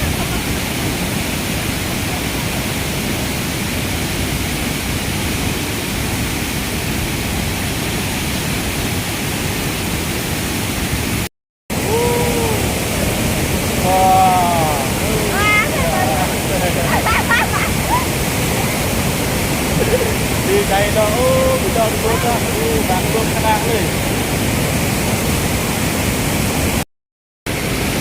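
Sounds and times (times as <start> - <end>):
waterfall rushing: 0.0 - 26.8, 27.5 - 28.0
person calling out: 11.8 - 12.8, 13.8 - 18.0, 19.8 - 23.8.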